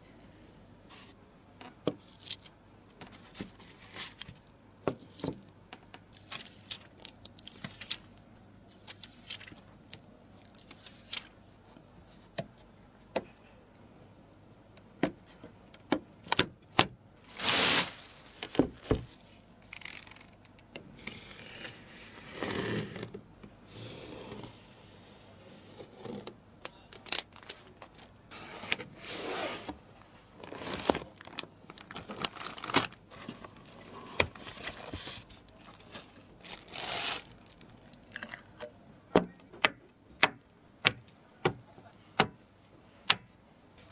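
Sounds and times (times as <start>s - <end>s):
scraping and rustling: 17.3s - 19.2s.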